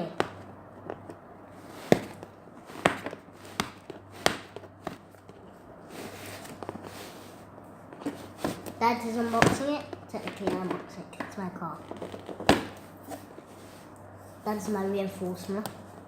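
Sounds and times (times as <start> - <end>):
handling taps and knocks: 0.1 - 1.2, 1.8 - 5.5, 7.9 - 13.3.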